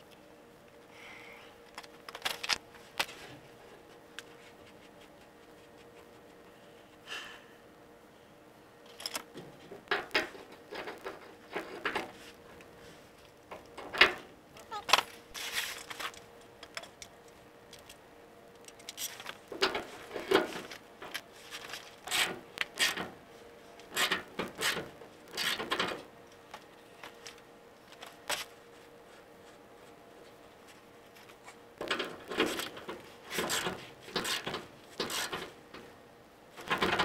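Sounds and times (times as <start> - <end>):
hand tools scraping and clunking: 30.7 - 35.9.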